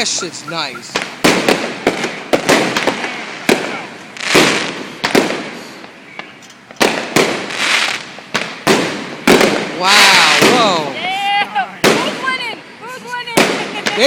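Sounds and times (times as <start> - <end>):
fireworks bangs and crackling: 0.0 - 14.0.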